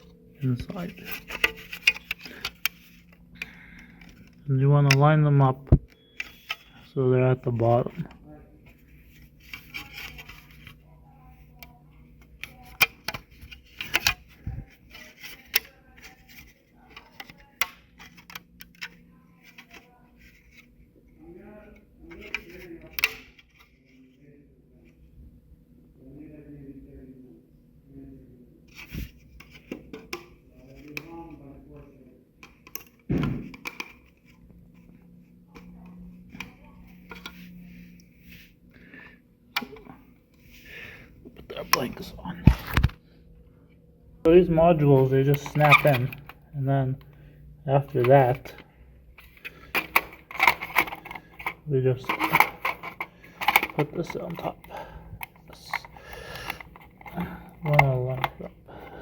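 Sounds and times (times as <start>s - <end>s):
plastic parts clicking and knocking: 0.0s - 6.8s, 7.6s - 20.6s, 22.1s - 23.8s, 32.4s - 34.9s, 45.0s - 47.2s, 49.2s - 59.0s
faint steady hum: 0.0s - 59.0s
plastic parts thump: 33.1s - 34.0s, 49.2s - 59.0s.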